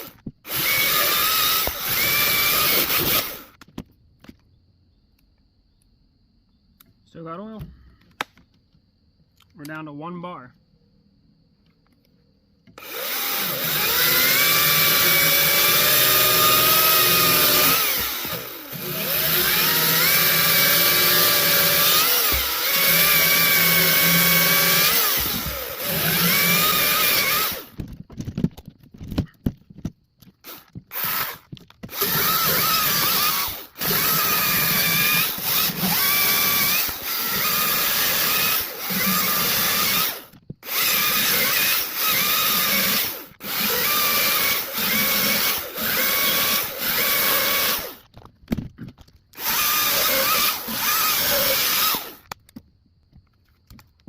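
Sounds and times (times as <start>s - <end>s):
chainsaw cutting through logs: 0.0s - 3.6s, 12.8s - 27.8s, 30.4s - 48.0s, 49.4s - 52.3s.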